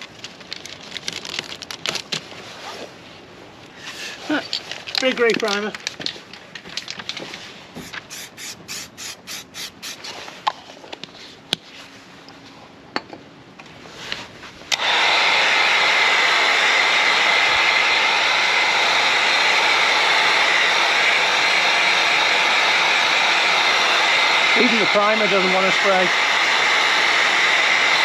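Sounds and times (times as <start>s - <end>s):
spray can ball rattling: 7.8s - 10.0s
spray can clicks: 7.8s - 10.0s
spray can hissing: 7.8s - 10.1s.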